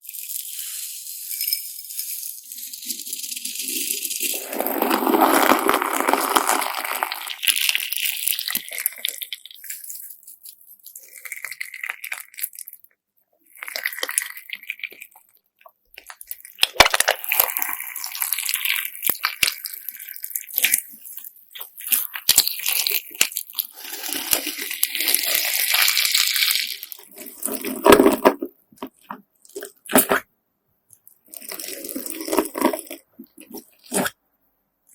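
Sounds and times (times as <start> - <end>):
slime crunching gritty: 4.2 - 12.7, 16.0 - 30.2, 31.3 - 34.2.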